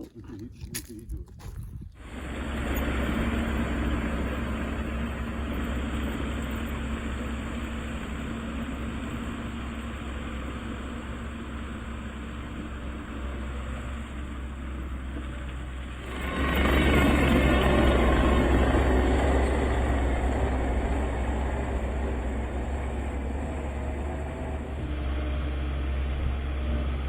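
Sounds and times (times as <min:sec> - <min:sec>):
engine running steadily: 0:02.0 - 0:27.0.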